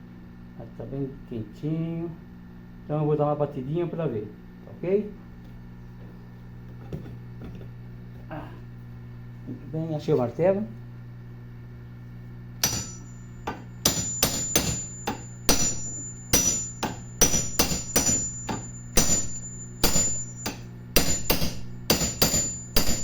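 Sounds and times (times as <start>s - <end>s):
steady low hum: 0.0s - 23.0s
hammer striking metal: 12.6s - 23.0s.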